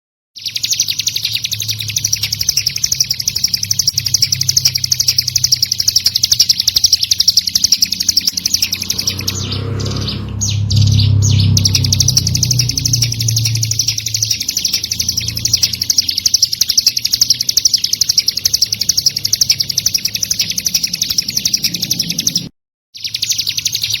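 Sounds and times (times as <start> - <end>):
bird trilling high chirps: 0.4 - 24.0
low hum: 1.5 - 19.6.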